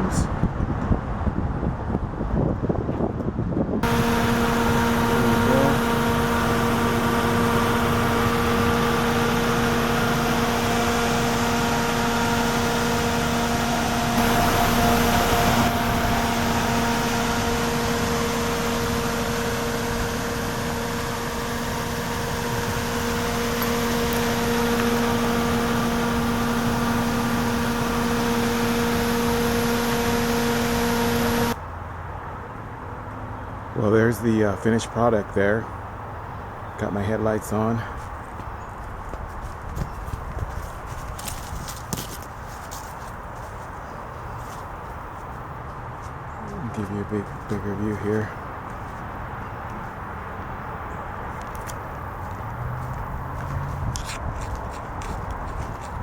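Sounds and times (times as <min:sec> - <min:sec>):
mechanical hum: 0:03.6 - 0:31.6.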